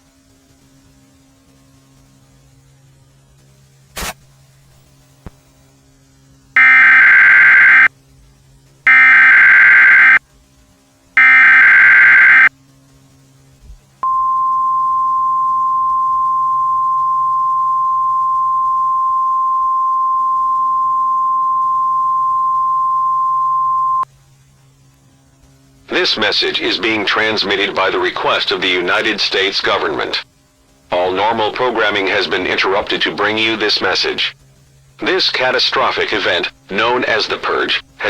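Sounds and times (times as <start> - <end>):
low mains hum: 0.0 - 38.0
digital data screech: 6.6 - 7.9, 8.9 - 10.2, 11.2 - 12.5
steady single-pitch attention tone: 6.6 - 7.9, 8.9 - 10.2, 11.2 - 12.5, 14.0 - 24.0.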